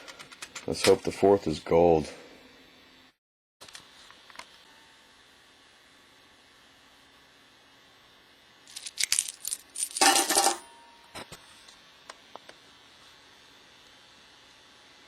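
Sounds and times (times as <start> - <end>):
small metal objects jingling: 8.7 - 10.6.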